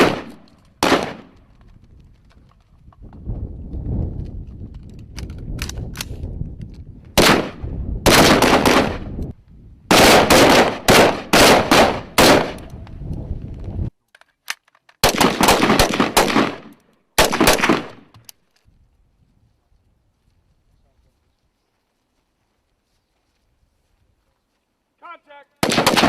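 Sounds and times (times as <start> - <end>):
single gunshots: 0.0 - 1.3, 7.2 - 9.1, 9.9 - 12.7, 15.0 - 18.0, 25.6 - 26.0
automatic gunfire bursts: 9.9 - 12.6, 15.0 - 16.6, 25.6 - 26.0.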